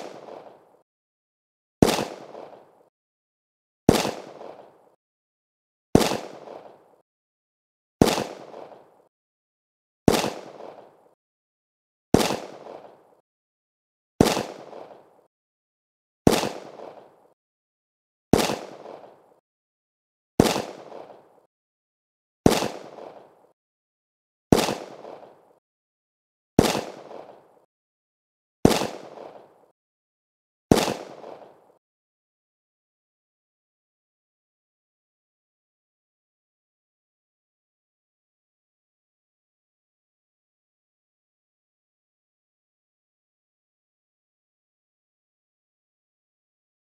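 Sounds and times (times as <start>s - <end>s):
handgun shots: 1.8s - 2.6s, 3.9s - 4.6s, 6.0s - 6.8s, 8.0s - 8.8s, 10.1s - 10.9s, 12.2s - 12.9s, 14.2s - 15.0s, 16.3s - 17.1s, 18.4s - 19.2s, 20.4s - 21.3s, 22.5s - 23.4s, 24.5s - 25.4s, 26.6s - 27.4s, 28.6s - 29.6s, 30.7s - 31.6s.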